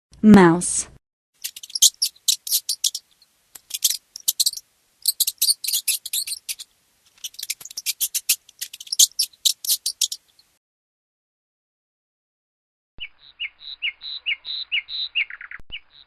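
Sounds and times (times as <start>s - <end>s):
mouse squeaking: 1.4s - 10.5s.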